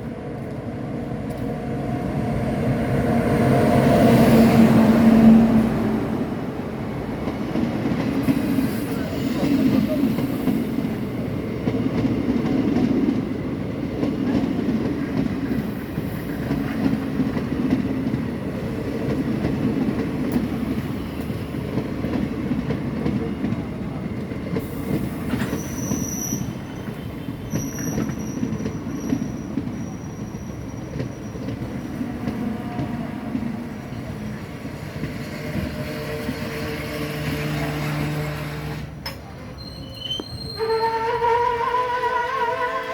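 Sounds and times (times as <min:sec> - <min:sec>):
train rumbling on rails: 0:00.0 - 0:42.9
high-pitched wheel squeal: 0:25.4 - 0:26.6, 0:39.6 - 0:42.9.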